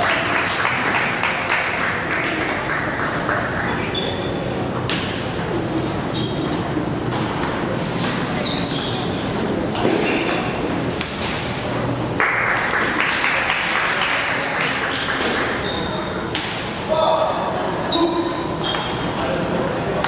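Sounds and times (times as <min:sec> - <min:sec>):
shoes squeaking on floor: 0:03.3 - 0:11.9, 0:15.2 - 0:16.4, 0:17.7 - 0:19.6.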